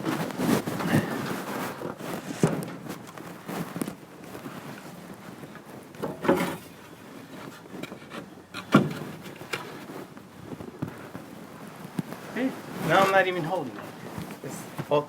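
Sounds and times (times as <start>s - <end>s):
plywood knocking and scraping on wall: 0.0s - 11.2s.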